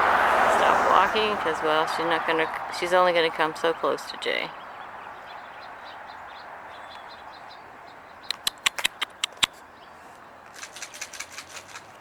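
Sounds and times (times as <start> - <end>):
outdoor background hiss: 0.0 - 12.0
small birds chirping: 3.8 - 12.0
sharp clicks: 8.3 - 9.6, 10.5 - 12.0.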